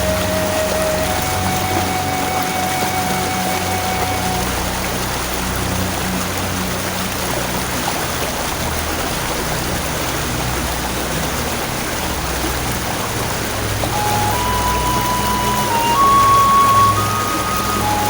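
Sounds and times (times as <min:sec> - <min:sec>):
low background music: 0:00.0 - 0:08.0, 0:12.8 - 0:18.0
rushing water: 0:00.0 - 0:18.0.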